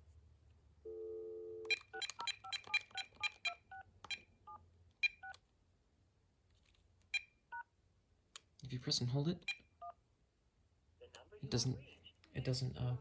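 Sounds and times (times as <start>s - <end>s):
telephone dial tone: 0.9s - 3.9s
touch-tone key beeps: 1.6s - 4.2s
key press clicks: 1.7s - 4.2s.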